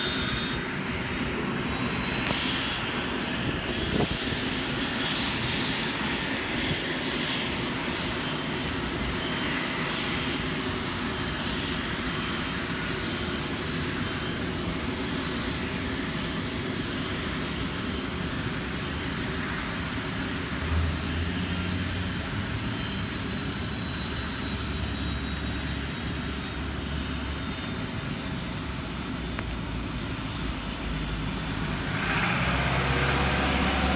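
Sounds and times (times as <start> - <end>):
faint high whine: 0.0 - 4.0
jet engines rushing: 0.0 - 33.9.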